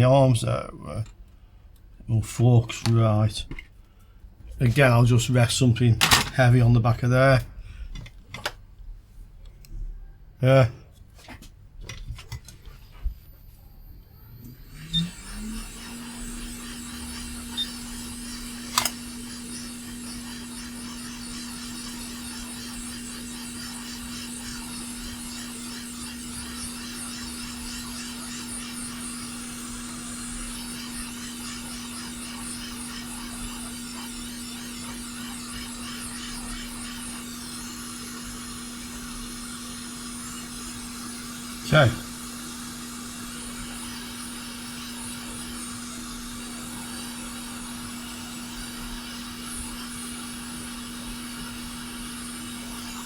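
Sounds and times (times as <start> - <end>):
hot air station fan humming: 11.9 - 53.0.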